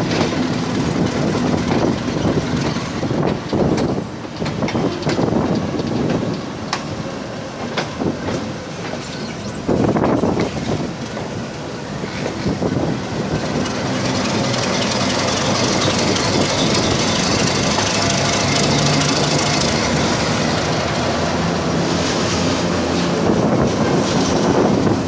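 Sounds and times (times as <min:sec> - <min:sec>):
train rumble on rails: 0:00.0 - 0:25.0
high wheel squeal: 0:08.7 - 0:10.8, 0:12.0 - 0:21.2.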